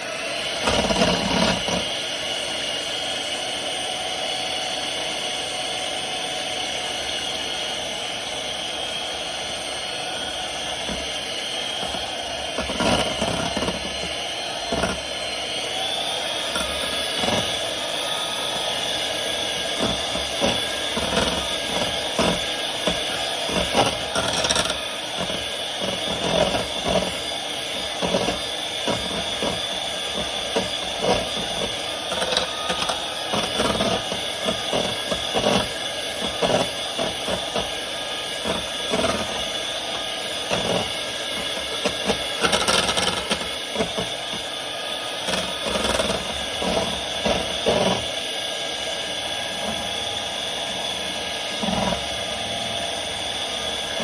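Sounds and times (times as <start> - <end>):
electric mixer motor whine: 0.0 - 54.0
mixer knocking on bowl: 10.7 - 11.2, 11.8 - 15.2, 16.5 - 17.8, 19.0 - 44.5, 45.3 - 48.1.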